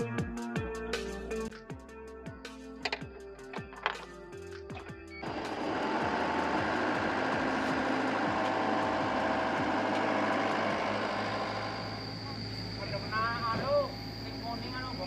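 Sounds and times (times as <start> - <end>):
held tones: 2.7 - 15.0
motor running: 4.8 - 15.0.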